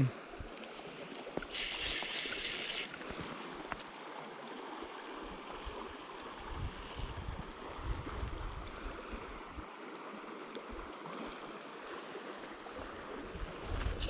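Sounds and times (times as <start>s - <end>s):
wind noise on microphone: 5.6s - 9.6s, 12.8s - 14.0s
river water rushing: 8.8s - 13.7s.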